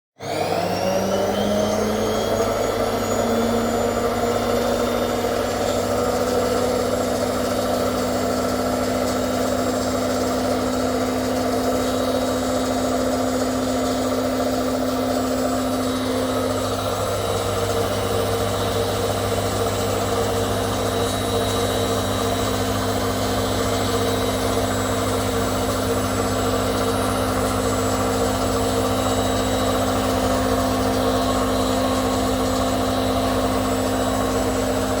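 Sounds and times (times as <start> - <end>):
washing machine spinning: 0.2 - 35.0.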